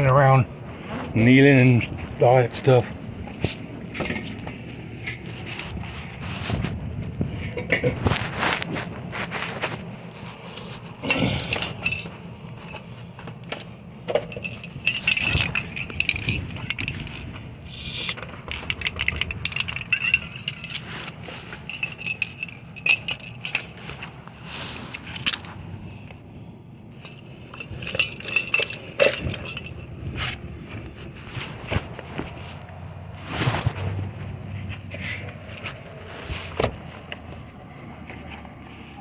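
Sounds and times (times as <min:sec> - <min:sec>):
metal tools and keys clinking: 0:10.8 - 0:25.6, 0:27.0 - 0:31.1.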